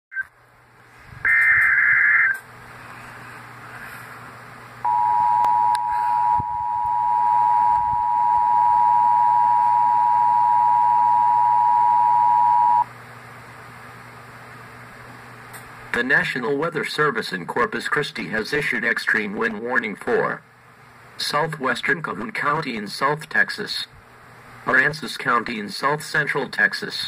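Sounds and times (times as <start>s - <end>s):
harsh digital data buzz: 1.3s - 2.4s
two-tone alert signal: 4.9s - 12.8s.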